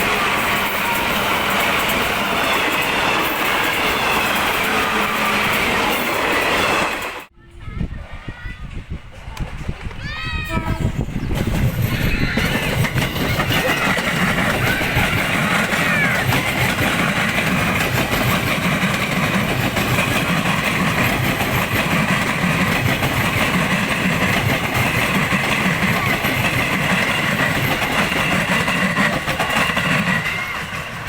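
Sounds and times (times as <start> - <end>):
people's voices: 7.4 - 17.4, 25.5 - 27.0.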